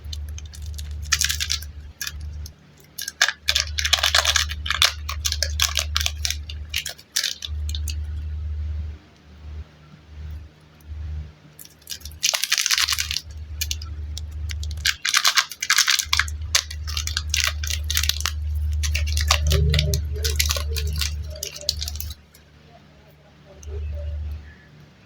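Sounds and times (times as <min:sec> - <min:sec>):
plastic packaging crinkling and tearing: 0:00.0 - 0:08.2, 0:11.6 - 0:22.2
low hum: 0:00.0 - 0:25.0.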